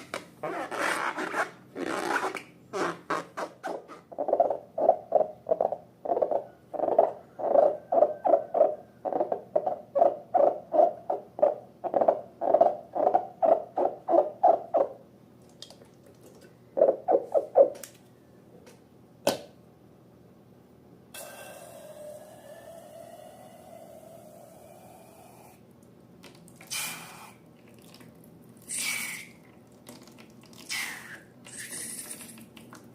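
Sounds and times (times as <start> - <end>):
slime squelching: 29.4 - 31.0.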